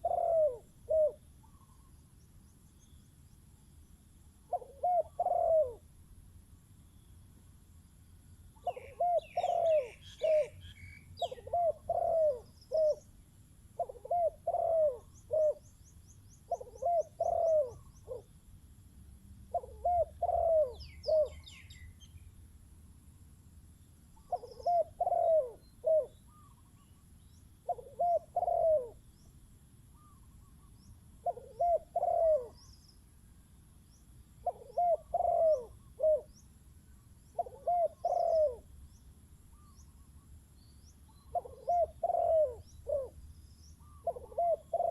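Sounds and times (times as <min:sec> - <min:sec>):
doves cooing: 0:00.0 - 0:01.9, 0:04.5 - 0:05.9, 0:08.6 - 0:10.6, 0:11.2 - 0:13.0, 0:13.8 - 0:15.6, 0:16.5 - 0:18.3, 0:19.5 - 0:21.5, 0:24.2 - 0:26.6, 0:27.6 - 0:29.0, 0:30.0 - 0:32.6, 0:34.4 - 0:36.3, 0:37.4 - 0:38.7, 0:41.3 - 0:43.2, 0:43.8 - 0:44.9
small birds chirping and trilling: 0:08.6 - 0:13.2, 0:19.6 - 0:22.4, 0:33.9 - 0:44.9.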